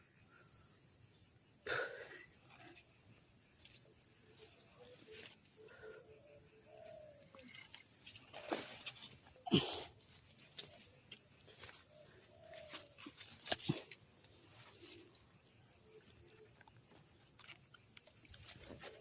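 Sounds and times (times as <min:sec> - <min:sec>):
crickets chirping: 0:00.0 - 0:19.0
faint clicks and rustles: 0:16.2 - 0:19.0.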